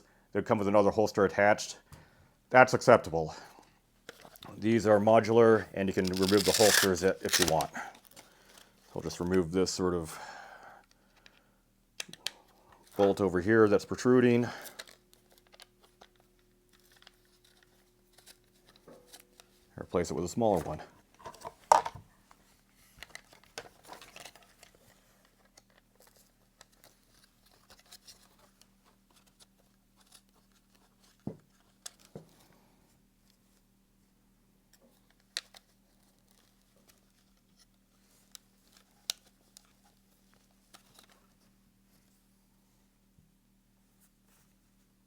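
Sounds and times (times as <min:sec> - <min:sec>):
handling rustles: 0:05.4 - 0:09.4.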